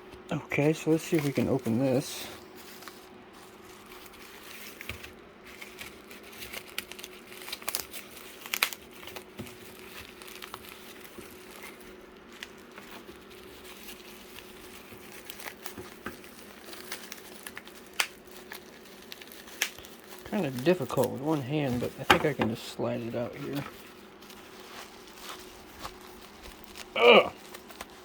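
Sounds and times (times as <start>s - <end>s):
faint steady hum: 0.0s - 28.0s
packaging crinkling and rustling: 0.1s - 28.0s.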